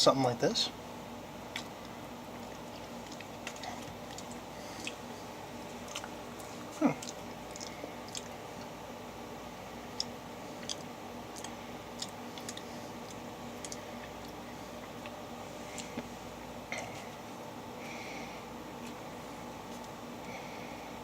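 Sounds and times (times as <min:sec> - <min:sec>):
steady low hum: 0:00.0 - 0:21.0
sticky chewing squishes: 0:01.4 - 0:08.8, 0:09.8 - 0:17.2.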